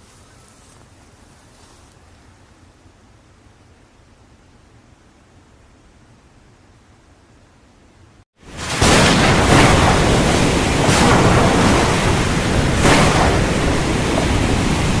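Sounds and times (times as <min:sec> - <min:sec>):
loud rushing noise: 0:08.4 - 0:15.0.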